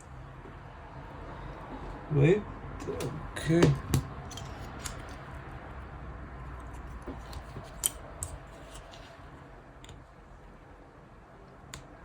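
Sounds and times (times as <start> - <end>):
small tools clicking and tapping: 2.8 - 5.2, 6.6 - 9.1.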